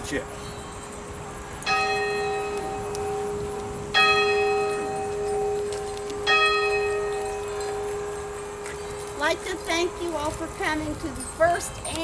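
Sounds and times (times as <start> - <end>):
bell ringing: 0.7 - 11.8.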